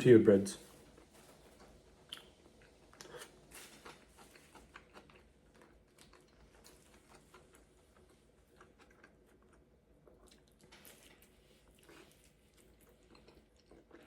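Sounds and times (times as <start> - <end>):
faint chewing: 0.6 - 14.0
soft mouth clicks: 2.1 - 2.3.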